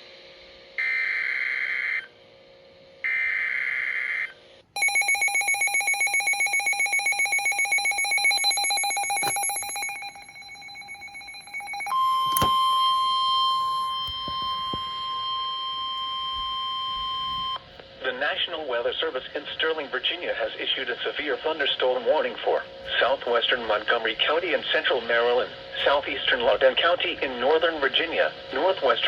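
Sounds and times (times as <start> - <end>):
rapidly pulsing alarm tone: 3.0 - 17.7
steady single-pitch warning tone: 4.8 - 17.7.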